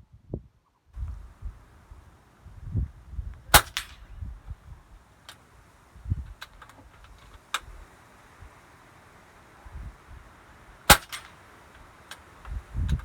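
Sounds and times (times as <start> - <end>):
air rifle shot crack: 3.5 - 4.3, 10.9 - 11.9.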